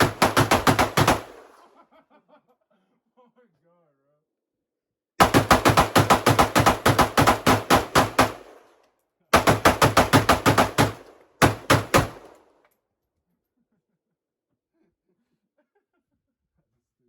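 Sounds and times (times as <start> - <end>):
pistol firing rapid shots: 0.0 - 1.6, 5.2 - 8.7, 9.4 - 12.4.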